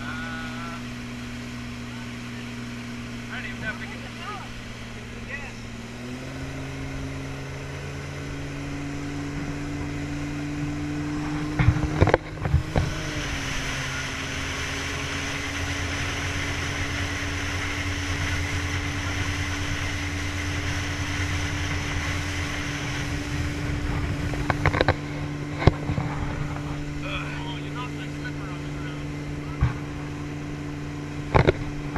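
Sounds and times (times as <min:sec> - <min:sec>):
motorboat engine running: 0:00.0 - 0:31.9
water rushing: 0:00.0 - 0:31.9
wind noise: 0:06.5 - 0:27.2.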